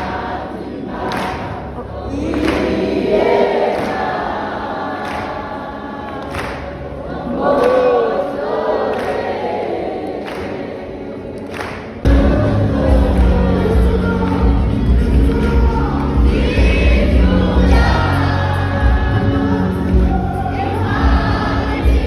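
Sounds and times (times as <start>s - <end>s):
choir singing: 0.0s - 22.0s
band with heavy bass: 12.1s - 22.0s.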